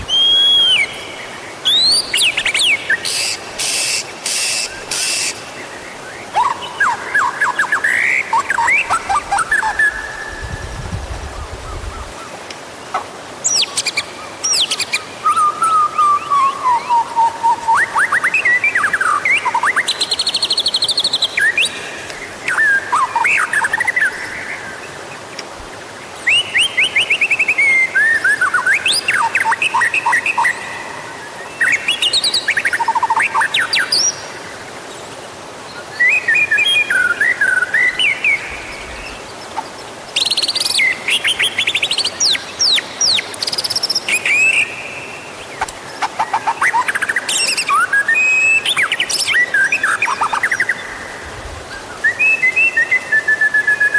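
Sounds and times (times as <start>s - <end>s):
bird singing whistles and trills: 0.0s - 3.1s, 13.5s - 21.7s, 26.2s - 30.8s, 35.9s - 39.1s, 46.3s - 51.1s, 51.7s - 53.9s.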